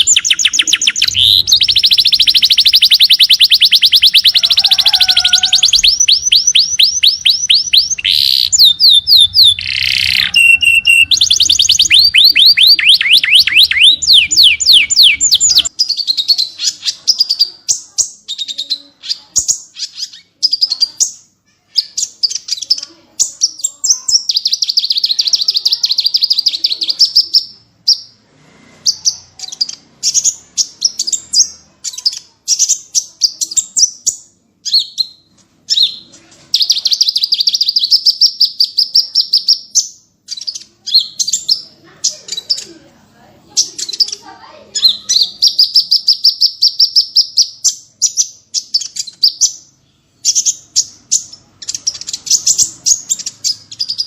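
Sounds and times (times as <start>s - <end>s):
bird sharp notes and trills: 0.0s - 18.5s
songbird rapid chattering: 0.0s - 28.0s, 43.5s - 54.0s.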